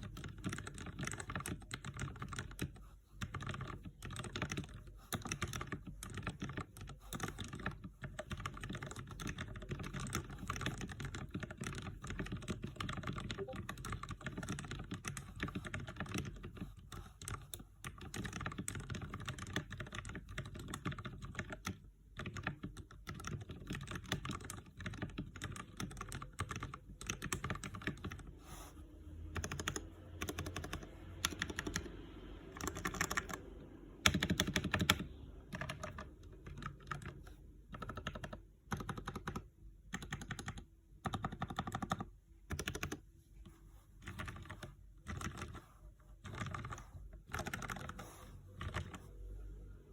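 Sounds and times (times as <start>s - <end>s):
mechanical keyboard typing: 0.0s - 28.4s, 29.2s - 43.0s, 44.0s - 49.2s.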